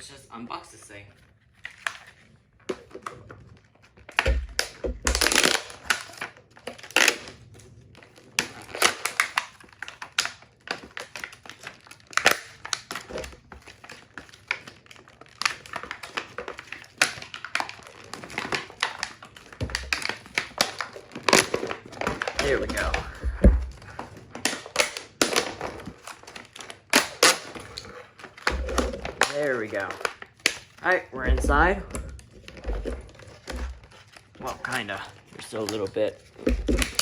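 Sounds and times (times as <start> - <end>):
packaging crackling and tearing: 0.0 - 37.0
dull thumps: 22.1 - 24.1, 31.2 - 33.9.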